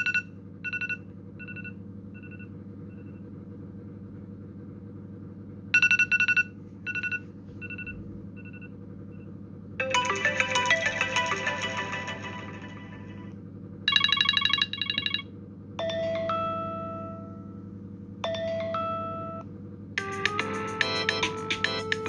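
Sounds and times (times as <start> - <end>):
high beeping ringtone: 9.8 - 13.3, 13.9 - 15.2, 20.0 - 22.0
melodic ringtone: 9.8 - 13.3, 15.8 - 17.6, 20.0 - 22.0.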